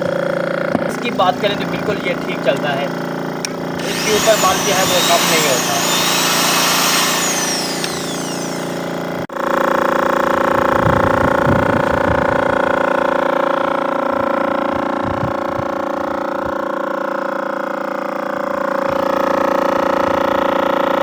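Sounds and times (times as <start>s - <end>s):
compressor motor humming and whining: 0.8s - 9.3s.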